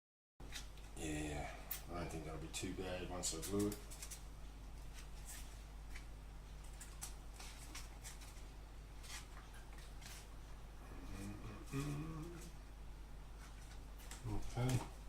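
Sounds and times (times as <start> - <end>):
steady low hum: 0.4 - 15.0.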